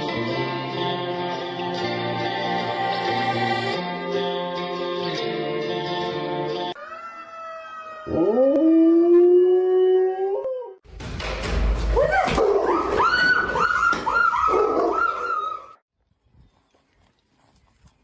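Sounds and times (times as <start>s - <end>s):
dog howling: 6.8s - 10.8s, 12.2s - 15.8s
dog yipping: 12.0s - 15.8s.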